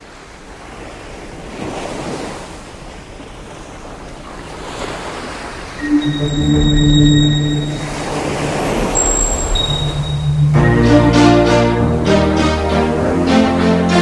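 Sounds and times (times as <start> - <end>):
sea waves washing: 1.4 - 14.0
wind on microphone: 5.8 - 11.6
music with held tones: 5.8 - 14.0.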